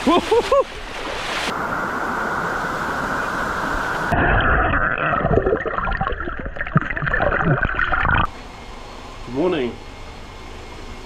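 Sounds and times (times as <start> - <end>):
rushing water hiss: 0.0 - 4.2
muffled water gurgling and splashing: 0.7 - 8.3.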